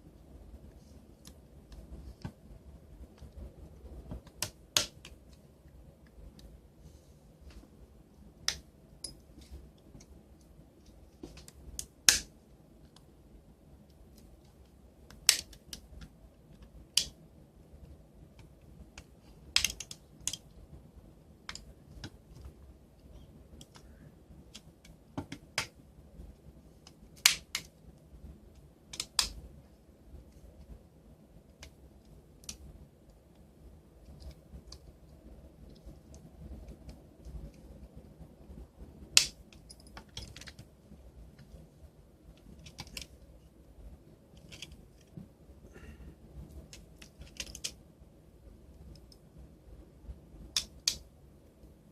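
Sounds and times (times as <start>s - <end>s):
plastic clicks and snaps: 13.9s - 17.2s, 18.4s - 20.5s, 28.9s - 29.4s, 31.5s - 32.7s, 50.5s - 51.0s.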